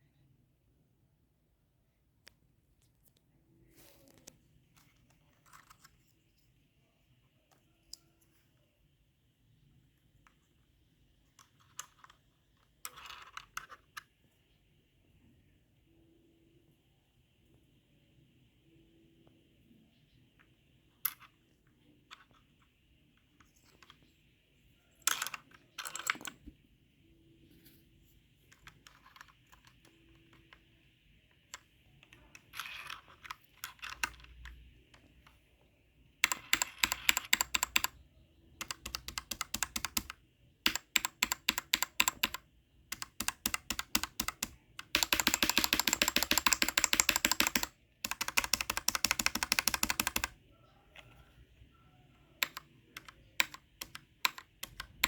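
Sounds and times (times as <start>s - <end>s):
mechanical keyboard typing: 36.2s - 38.0s, 38.6s - 50.4s, 52.4s - 55.0s.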